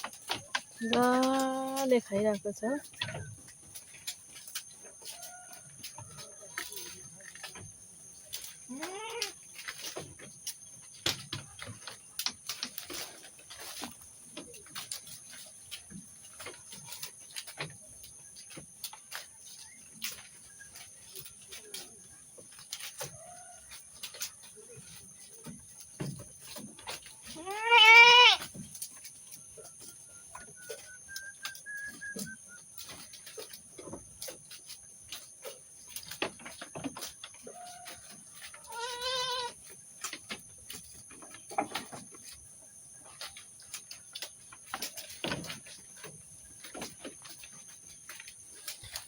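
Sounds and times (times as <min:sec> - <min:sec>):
small clicks and rustles: 0:00.0 - 0:49.0
goat bleating: 0:08.7 - 0:09.4, 0:27.3 - 0:28.5, 0:38.6 - 0:39.6.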